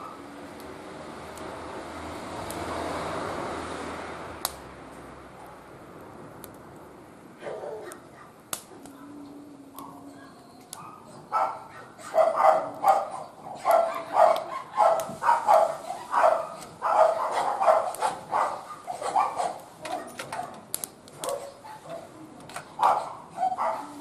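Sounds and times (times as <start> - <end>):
dog barking: 7.4 - 8.4, 9.8 - 10.0, 10.8 - 20.6, 21.2 - 22.1, 22.8 - 24.0.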